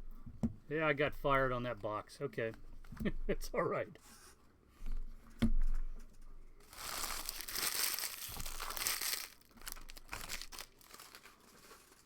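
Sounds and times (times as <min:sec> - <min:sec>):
plastic wrapping crinkling and tearing: 0:06.6 - 0:12.0.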